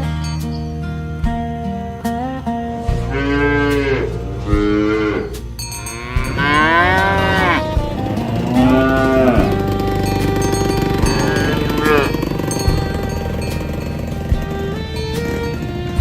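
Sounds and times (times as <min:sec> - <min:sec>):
cattle mooing: 0:02.5 - 0:16.0.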